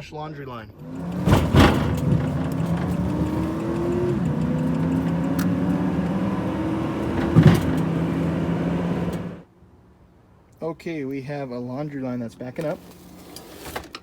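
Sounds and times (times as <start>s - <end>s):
vehicle engine accelerating: 0.8s - 9.5s
short thump: 1.1s - 8.4s.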